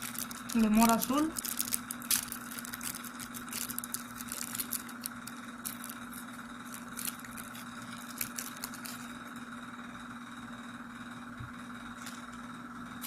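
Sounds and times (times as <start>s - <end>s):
gum wrappers crinkling: 0.0s - 9.3s
electrical hum: 0.0s - 13.0s.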